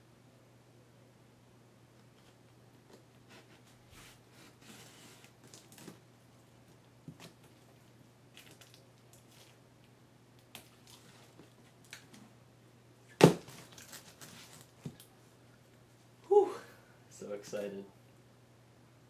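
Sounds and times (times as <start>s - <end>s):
packaging rustling: 4.5s - 6.0s, 8.3s - 9.6s, 13.2s - 15.1s.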